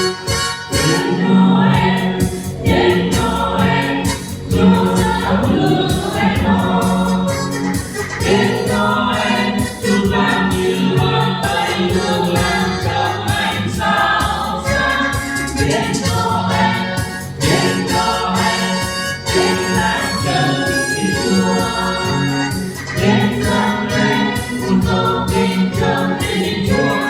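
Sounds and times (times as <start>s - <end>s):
accompaniment with steady beat: 0.0s - 27.0s
church choir singing a carol: 0.0s - 27.0s.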